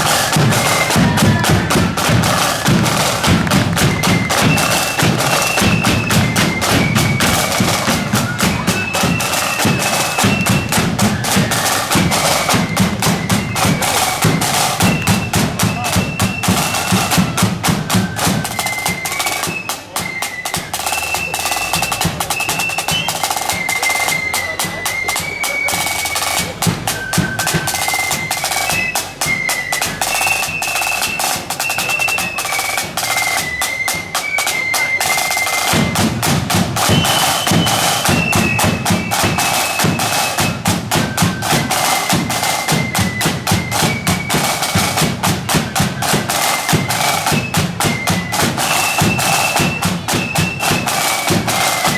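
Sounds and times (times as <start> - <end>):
bass drum beats: 0.0 - 17.6
marching band melody: 0.0 - 51.9
snare drum rolls: 0.0 - 51.9.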